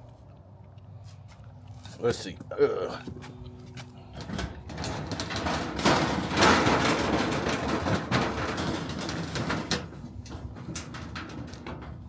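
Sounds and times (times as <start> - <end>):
sheet metal scraping and rattling: 4.1 - 12.0.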